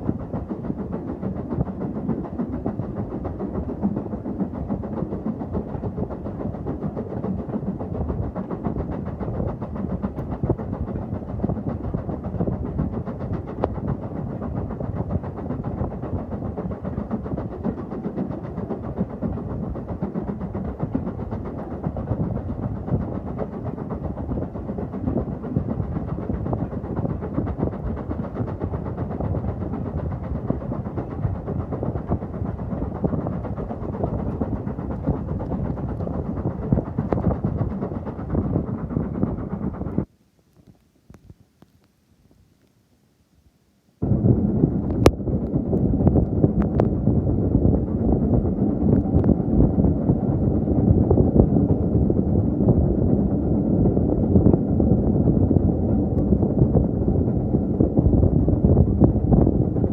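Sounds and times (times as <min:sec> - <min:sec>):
train wheels rumbling on rails: 0:00.0 - 0:40.1, 0:44.0 - 0:59.9.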